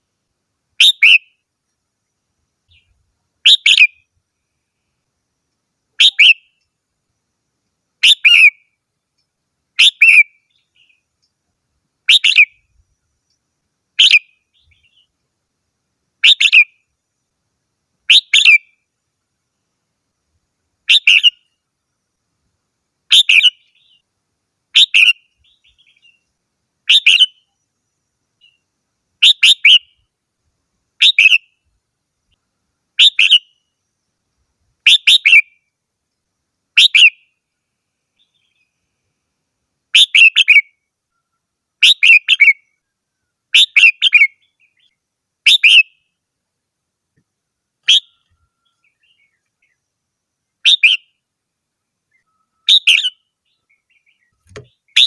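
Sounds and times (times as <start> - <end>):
bulbul singing: 0.8 - 1.4, 2.7 - 4.1, 6.0 - 6.8, 8.0 - 11.4, 12.0 - 13.4, 14.0 - 15.2, 16.2 - 16.8, 18.1 - 18.8, 20.9 - 21.6, 23.1 - 24.1, 24.7 - 30.1, 31.0 - 31.6, 33.0 - 33.8, 34.8 - 35.6, 36.8 - 37.4, 38.1 - 38.8, 40.0 - 42.9, 43.5 - 46.2, 47.8 - 49.9, 50.5 - 51.2, 52.1 - 55.0.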